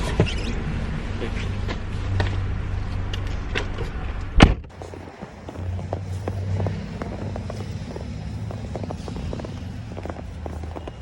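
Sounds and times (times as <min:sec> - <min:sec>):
car engine idling: 0:04.7 - 0:11.0.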